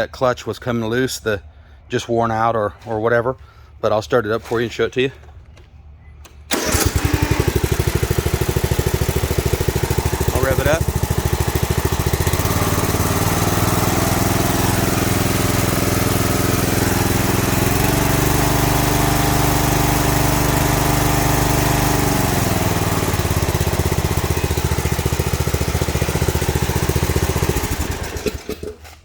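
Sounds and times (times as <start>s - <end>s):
mower engine revving: 6.5s - 29.0s.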